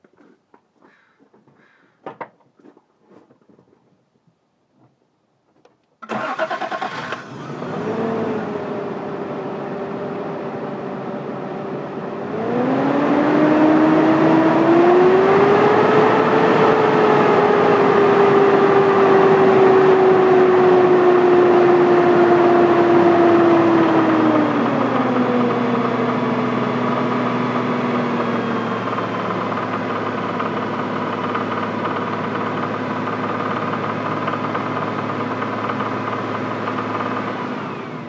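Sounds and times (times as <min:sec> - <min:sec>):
engine cranking and starting: 0:06.0 - 0:08.6
car engine idling and revving: 0:06.0 - 0:38.0.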